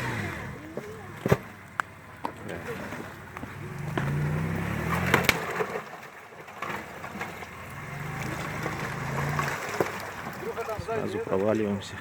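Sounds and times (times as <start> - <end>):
vehicle engine pulling hard: 0.0 - 12.0
ice cracking: 2.4 - 11.3.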